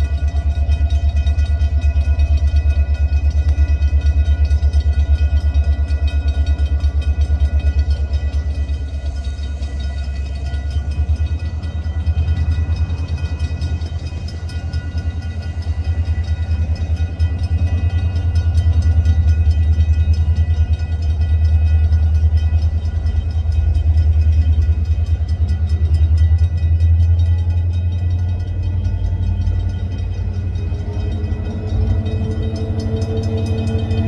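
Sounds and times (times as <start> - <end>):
freight train rumbling: 0.0 - 34.0
high-pitched train tones: 0.0 - 34.0.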